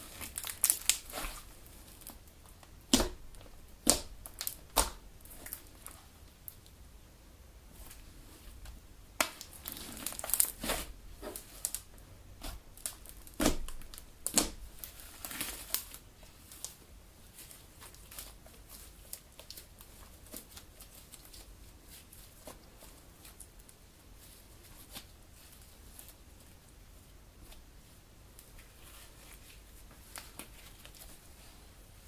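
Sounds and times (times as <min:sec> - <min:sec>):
slime crackling and popping: 0:00.0 - 0:05.9, 0:09.2 - 0:16.0.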